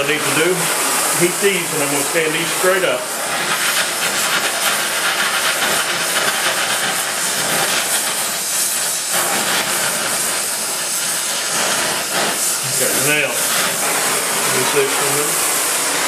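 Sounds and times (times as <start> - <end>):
gas torch flame hissing: 0.0 - 16.0.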